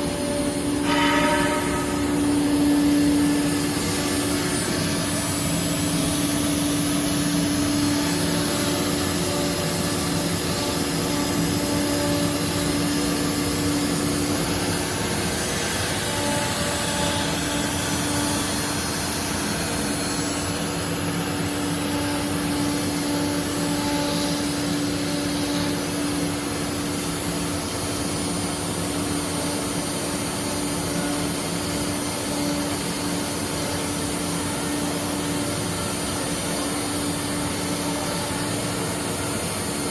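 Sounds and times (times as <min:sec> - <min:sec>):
rushing vacuum noise: 0:00.0 - 0:25.9
router machine whine: 0:00.0 - 0:39.9.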